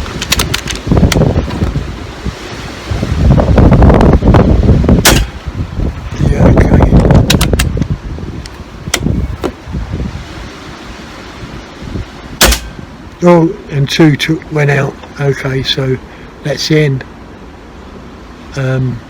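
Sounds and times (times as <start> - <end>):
wind buffeting microphone: 0.0 - 15.7
air rifle shot: 5.0 - 5.5, 12.4 - 12.9.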